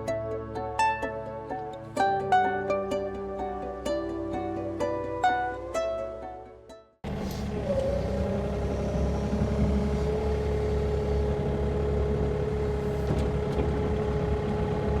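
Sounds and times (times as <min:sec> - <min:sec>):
plucked-string music: 0:00.0 - 0:15.0
excavator diesel engine running: 0:07.0 - 0:15.0.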